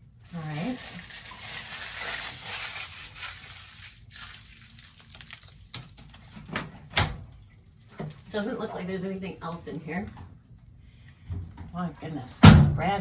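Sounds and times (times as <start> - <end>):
plastic film peeled and crumpled: 0.0 - 6.4.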